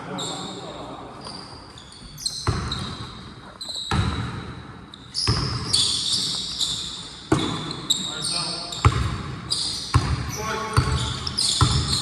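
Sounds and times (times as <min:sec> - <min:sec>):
sneakers squeaking on the floor: 0:00.0 - 0:12.0
basketball bouncing on a gym floor: 0:02.3 - 0:06.4, 0:07.3 - 0:08.1, 0:08.7 - 0:12.0.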